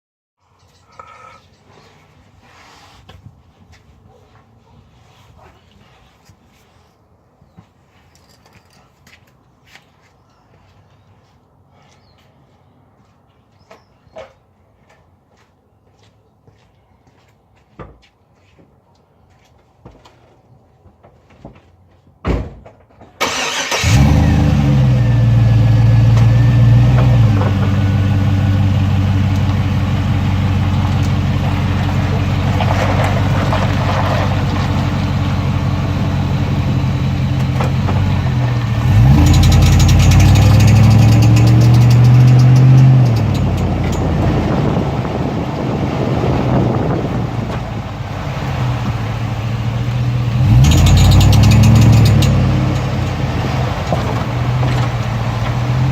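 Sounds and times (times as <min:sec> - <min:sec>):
car engine starting and revving: 0:23.2 - 0:55.9.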